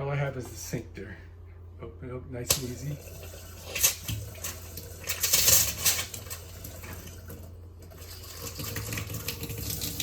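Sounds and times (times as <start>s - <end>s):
water spurts clattering into sink: 2.5s - 10.0s.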